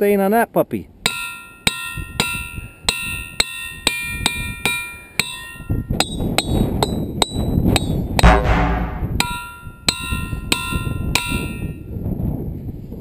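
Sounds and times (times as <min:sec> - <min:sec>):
hammer striking ringing rock: 0:01.1 - 0:11.6
loud low rumble: 0:08.2 - 0:09.2.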